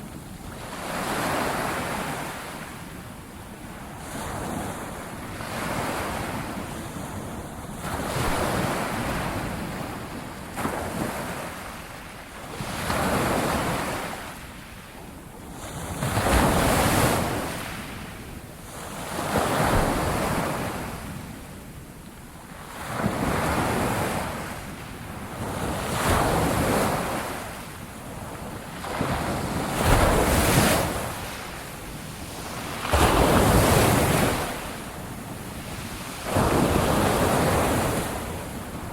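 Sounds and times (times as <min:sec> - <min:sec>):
ocean waves breaking on shore: 0:00.0 - 0:03.0, 0:03.7 - 0:14.8, 0:22.5 - 0:38.9
wind noise on microphone: 0:00.0 - 0:11.6, 0:15.0 - 0:38.9.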